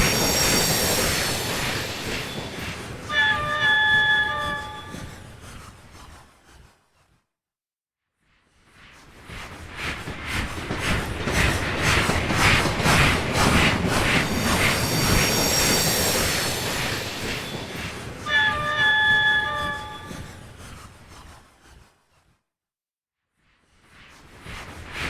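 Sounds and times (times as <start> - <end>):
high thin squeal: 0.0 - 5.6, 13.1 - 20.8
steam locomotive chuffing: 0.0 - 5.7, 9.7 - 20.9.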